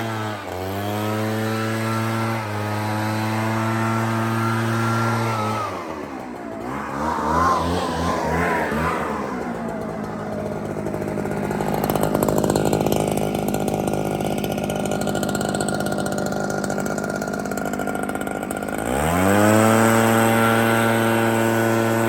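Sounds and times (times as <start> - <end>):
leaf blower engine revving: 0.0 - 22.0
rush of air: 6.6 - 11.7.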